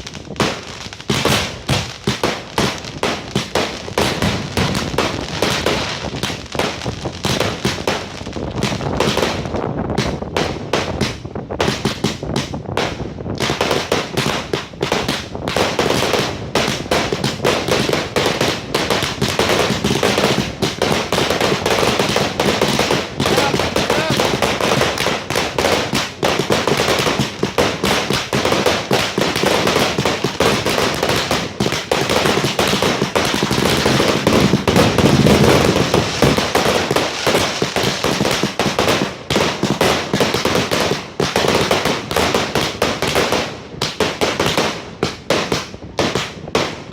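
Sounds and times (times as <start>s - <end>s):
fireworks banging and crackling: 0.0s - 46.9s.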